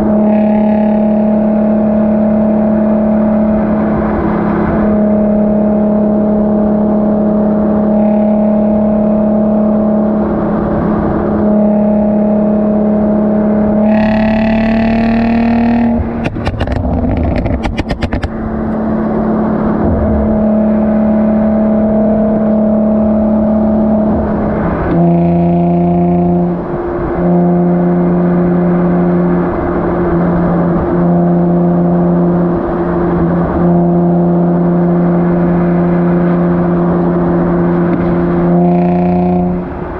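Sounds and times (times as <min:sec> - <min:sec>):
car exhaust drone: 0:00.0 - 0:39.9
engine revving: 0:00.0 - 0:39.9
exhaust crackles and pops: 0:15.6 - 0:18.8.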